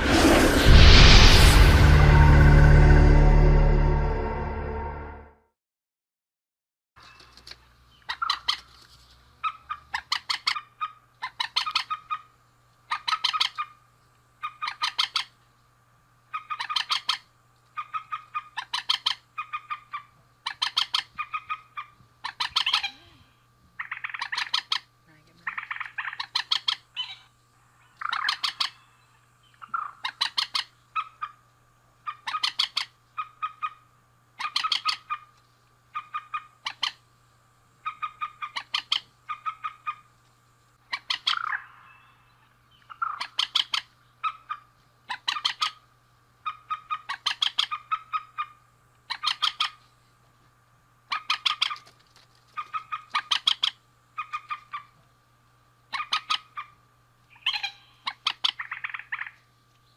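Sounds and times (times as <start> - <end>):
faint steady hum: 7.0 - 59.9
rail bird calling stuttering notes: 17.8 - 23.0, 23.8 - 27.3, 28.0 - 29.0, 32.0 - 33.8, 34.4 - 35.3, 35.9 - 37.0, 37.8 - 40.1, 40.9 - 45.8, 46.4 - 49.8, 51.1 - 51.9, 52.5 - 54.9, 55.9 - 59.4.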